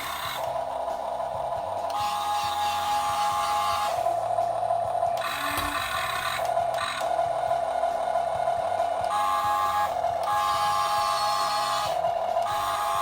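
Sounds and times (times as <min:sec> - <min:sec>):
electric gear motors whining: 0:00.0 - 0:13.0.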